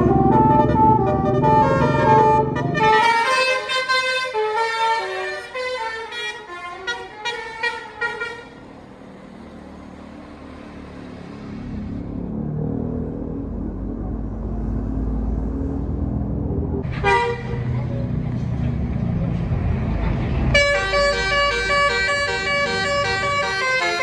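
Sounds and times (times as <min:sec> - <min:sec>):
bus musical horn melody: 0:00.0 - 0:08.7, 0:16.9 - 0:17.8, 0:20.5 - 0:24.0
bus engine rumbling: 0:00.0 - 0:24.0
road noise: 0:00.0 - 0:24.0.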